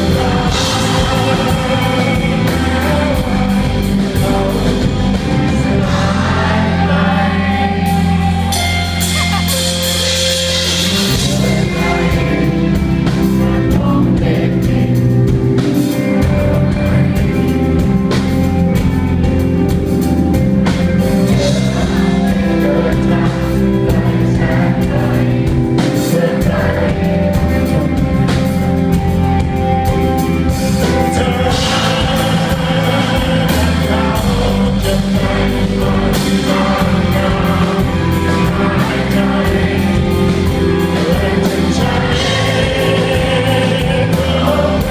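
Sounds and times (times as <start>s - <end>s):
person singing: 0.0s - 18.2s, 21.2s - 44.9s
drum kit: 0.0s - 44.9s
guitar: 0.0s - 44.9s.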